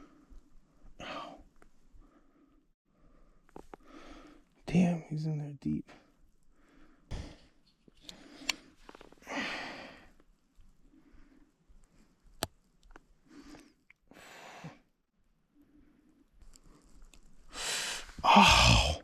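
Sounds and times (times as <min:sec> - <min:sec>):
man exhaling in pain: 0:17.6 - 0:19.0.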